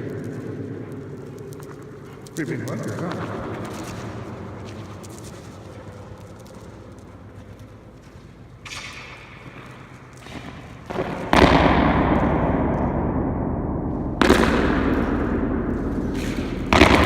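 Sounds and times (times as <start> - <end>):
echoing bangs in bunker: 8.6 - 17.0.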